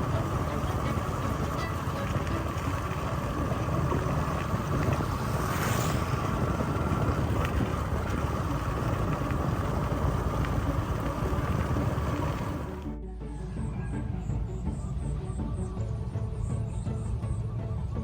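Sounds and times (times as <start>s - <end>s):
vehicle running: 0.0s - 18.0s.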